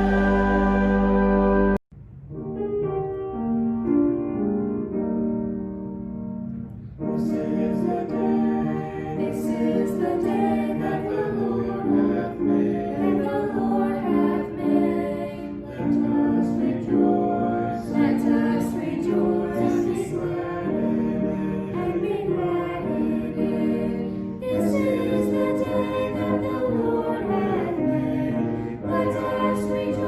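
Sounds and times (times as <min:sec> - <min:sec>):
choir singing a hymn: 0:00.0 - 0:01.8, 0:07.0 - 0:30.0
keyboard playing: 0:00.0 - 0:14.4.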